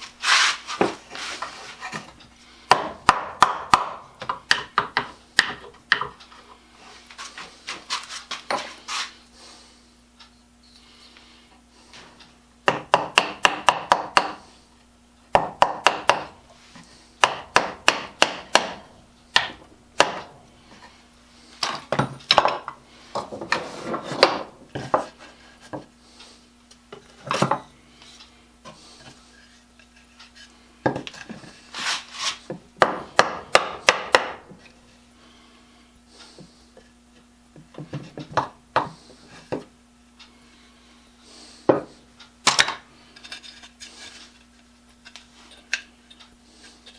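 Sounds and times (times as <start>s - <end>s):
hammer tapping on wood: 2.7s - 6.2s, 12.7s - 14.4s, 15.3s - 16.4s, 17.2s - 18.8s.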